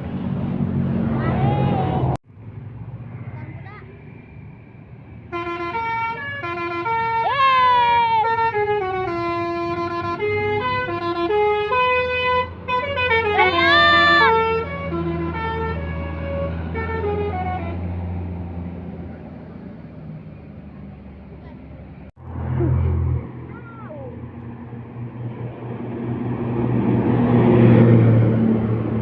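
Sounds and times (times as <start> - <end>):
bus engine low hum: 0.0 - 29.0
bus horn playing a melody: 5.3 - 18.0.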